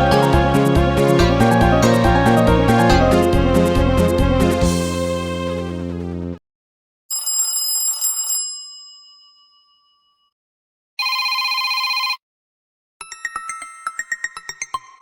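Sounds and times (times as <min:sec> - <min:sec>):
bright phone chime: 0:11.0 - 0:12.2.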